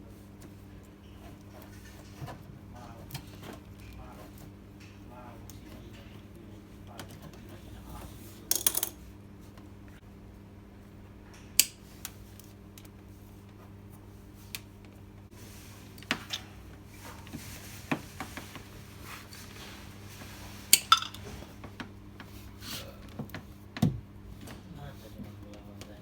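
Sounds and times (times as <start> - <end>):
steady low hum: 0.0 - 26.0
hand tools clicking and clinking: 8.5 - 9.0.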